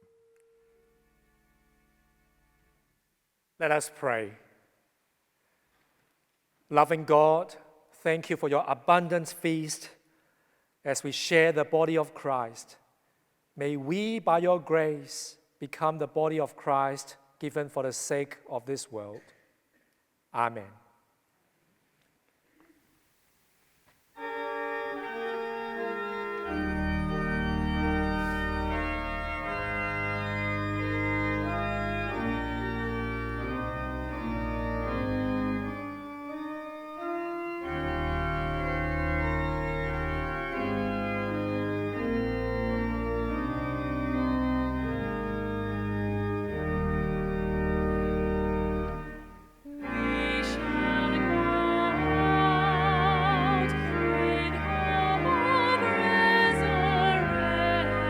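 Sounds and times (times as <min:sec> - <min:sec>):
organ playing sustained chords: 0:00.0 - 0:02.9, 0:24.2 - 0:58.0.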